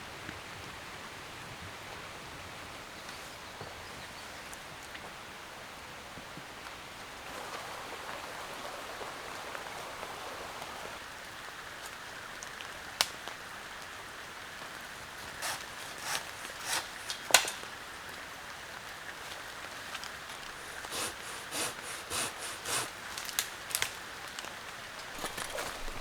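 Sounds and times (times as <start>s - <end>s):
steady rain falling: 0.0s - 26.0s
short scraping or rustling: 25.2s - 26.0s.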